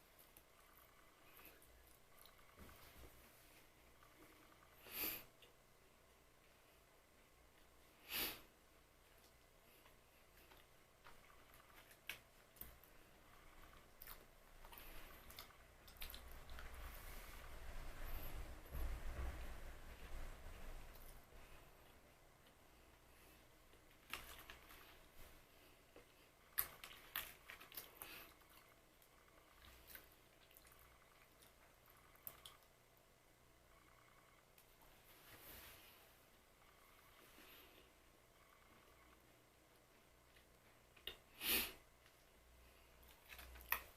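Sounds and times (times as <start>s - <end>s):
crunchy chewing: 9.2s - 17.4s, 26.0s - 32.8s.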